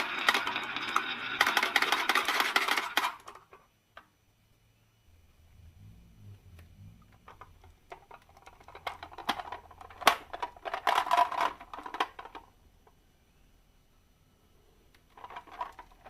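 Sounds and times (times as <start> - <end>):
marbles clattering down a track: 0.0 - 3.4, 7.3 - 12.4, 15.2 - 16.0.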